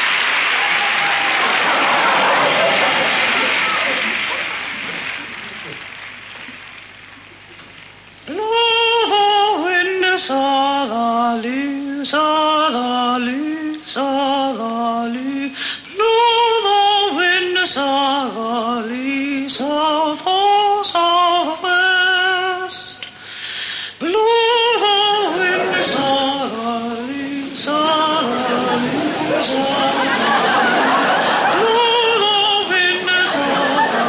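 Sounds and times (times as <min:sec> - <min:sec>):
woman singing slow melody: 0:08.3 - 0:23.1, 0:24.0 - 0:34.0.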